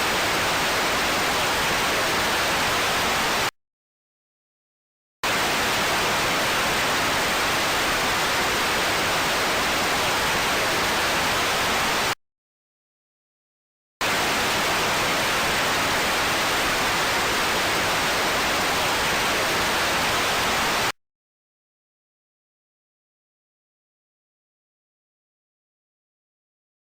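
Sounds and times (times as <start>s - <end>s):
television static hiss: 0.0s - 3.5s, 14.0s - 20.9s.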